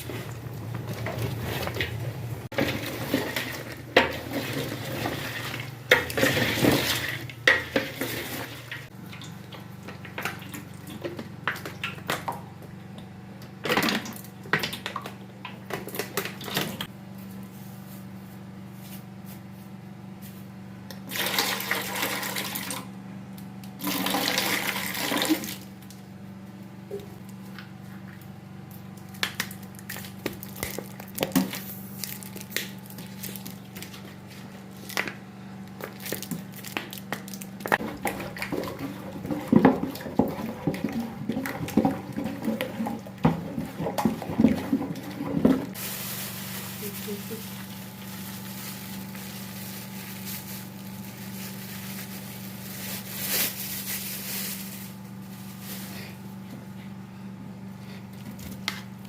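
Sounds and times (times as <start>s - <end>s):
kitchen water running and splashing: 21.1s - 22.9s, 23.8s - 25.7s
steady low hum: 25.6s - 59.0s.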